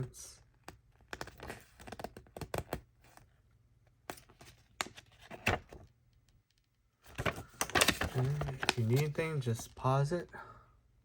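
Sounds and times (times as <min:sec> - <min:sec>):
paper pages turning: 0:00.6 - 0:03.4, 0:04.0 - 0:05.9, 0:07.0 - 0:09.8.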